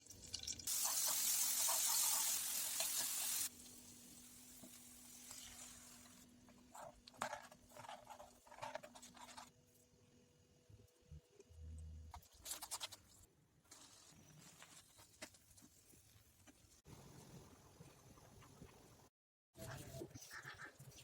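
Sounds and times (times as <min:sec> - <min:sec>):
food sizzling in hot oil: 0:00.0 - 0:06.2.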